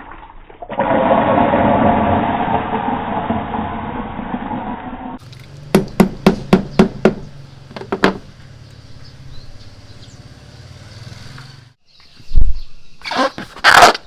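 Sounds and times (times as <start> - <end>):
sharp taps: 5.3 - 9.2.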